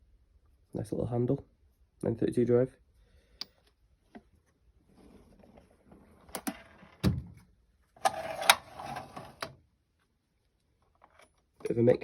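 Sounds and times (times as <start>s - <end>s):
steel drawers sliding and shutting: 8.0s - 9.6s.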